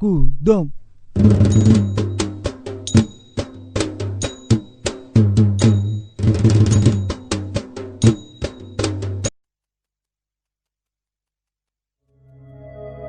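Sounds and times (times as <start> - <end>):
hand drum rhythm: 1.2 - 9.3.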